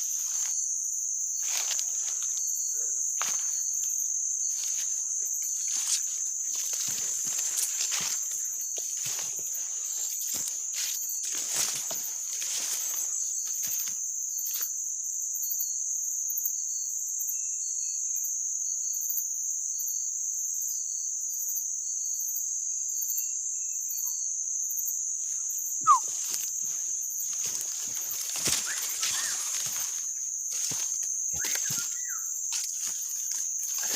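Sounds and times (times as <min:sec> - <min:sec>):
rustling through undergrowth: 0:00.0 - 0:14.7, 0:25.2 - 0:33.9
insects droning: 0:00.0 - 0:33.9
short rising whistle: 0:25.8 - 0:26.1
faint chirps: 0:25.8 - 0:26.5, 0:28.6 - 0:30.1, 0:31.3 - 0:32.4.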